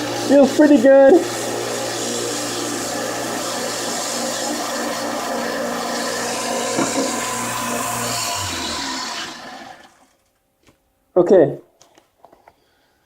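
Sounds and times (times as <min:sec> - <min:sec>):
knife-sharpening machine grinding: 0:00.0 - 0:10.0.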